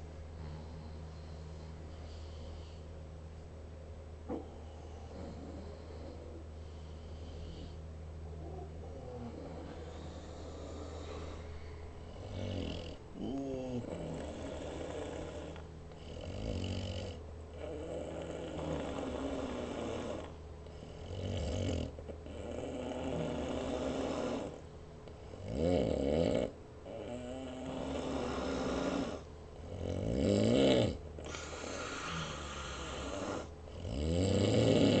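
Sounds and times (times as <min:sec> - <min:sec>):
person snoring: 0:08.4 - 0:24.7, 0:25.3 - 0:35.0.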